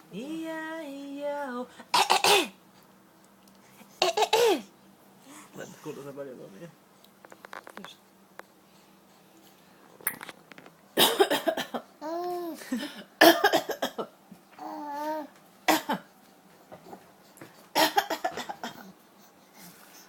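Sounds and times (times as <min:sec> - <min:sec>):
person coughing: 0:01.9 - 0:02.6, 0:04.0 - 0:04.7, 0:11.0 - 0:11.8, 0:12.7 - 0:14.1, 0:15.7 - 0:16.1, 0:17.8 - 0:18.9.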